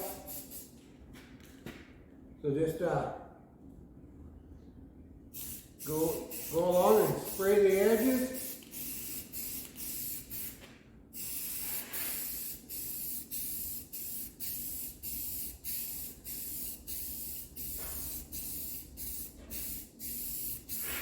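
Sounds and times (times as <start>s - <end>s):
aerosol spray can hissing: 0.0s - 0.7s, 5.4s - 10.6s, 11.2s - 21.0s.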